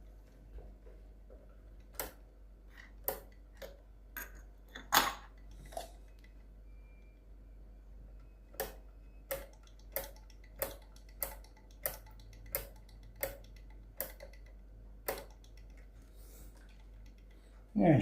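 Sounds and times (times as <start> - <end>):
clock movement clicking: 1.8 - 3.8, 8.5 - 17.6.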